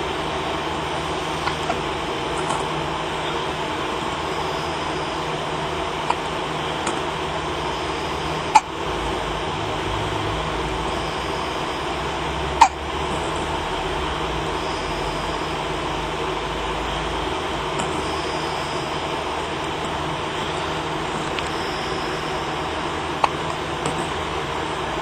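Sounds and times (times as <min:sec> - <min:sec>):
steady background hum: 0:00.0 - 0:25.0
baby hiccupping: 0:01.4 - 0:01.8, 0:08.4 - 0:08.8, 0:12.5 - 0:13.4, 0:23.2 - 0:24.1.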